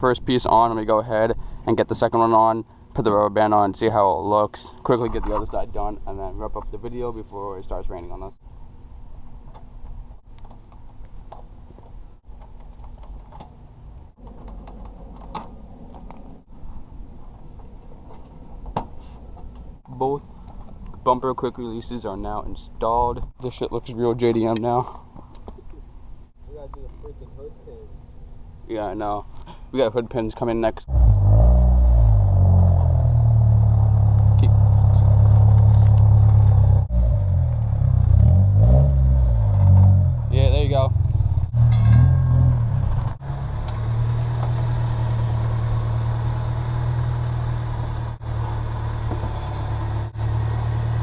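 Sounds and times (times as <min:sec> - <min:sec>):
low rumble: 0:30.9 - 0:51.0
car engine running: 0:31.9 - 0:51.0.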